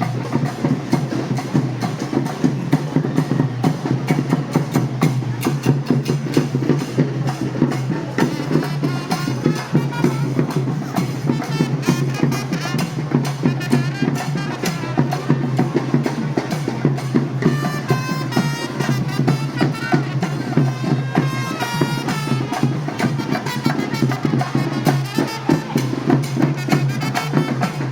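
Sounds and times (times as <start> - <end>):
procession drums beating: 0.0 - 27.9
shrill wind instrument: 8.2 - 15.7, 17.4 - 27.9.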